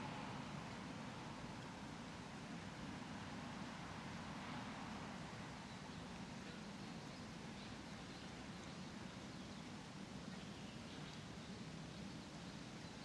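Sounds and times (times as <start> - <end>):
small birds chirping: 5.6 - 13.0.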